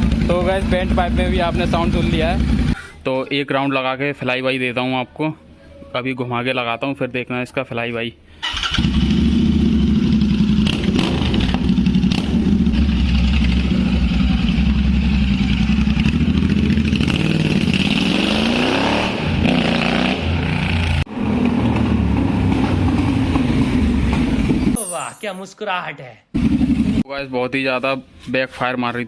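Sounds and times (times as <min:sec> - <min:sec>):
loud motorcycle engine revving: 0:00.0 - 0:02.8, 0:08.7 - 0:24.8, 0:26.4 - 0:27.0.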